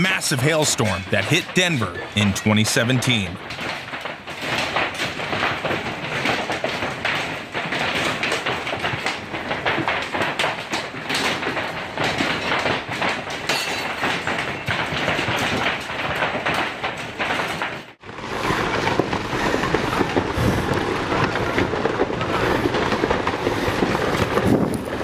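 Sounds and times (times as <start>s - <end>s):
steady noisy rush: 0.0s - 3.5s, 18.0s - 25.0s
hailstones pounding: 0.0s - 25.0s.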